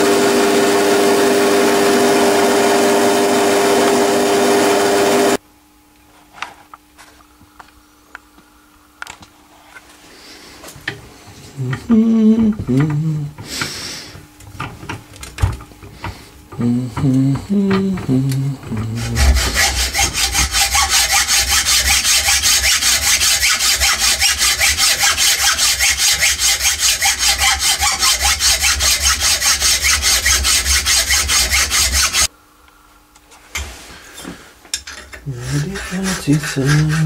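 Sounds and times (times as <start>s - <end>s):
metal being sawn by hand: 16.5s - 32.3s, 35.2s - 37.0s.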